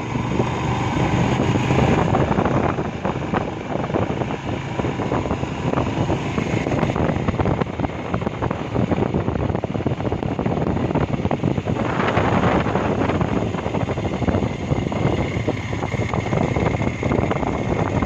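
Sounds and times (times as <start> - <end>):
motorcycle engine running: 0.0 - 18.0
wind buffeting microphone: 0.0 - 18.0.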